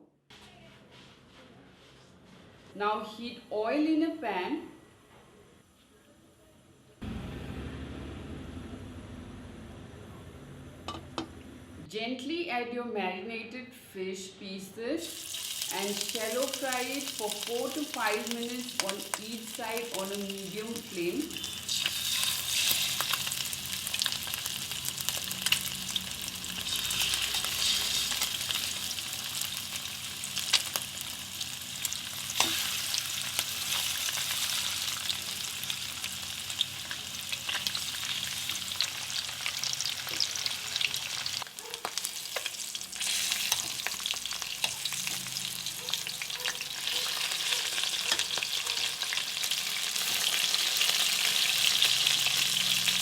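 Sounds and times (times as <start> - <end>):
fish sizzling in oil: 15.0 - 53.0
oil popping and crackling: 21.3 - 53.0.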